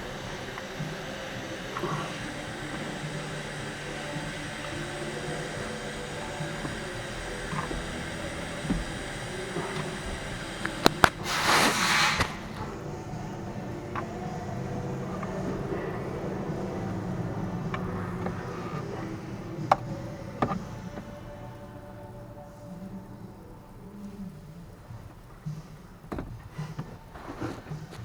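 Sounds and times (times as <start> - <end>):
steady background hum: 0.0 - 28.0
loud rustling scrape: 11.0 - 13.0.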